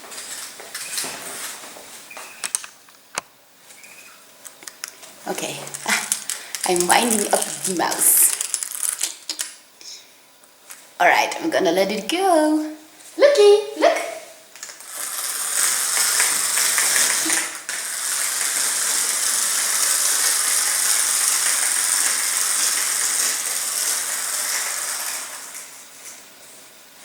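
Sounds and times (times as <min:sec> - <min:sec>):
clockwork toy whirring and rattling: 0:05.4 - 0:09.5, 0:14.6 - 0:26.2.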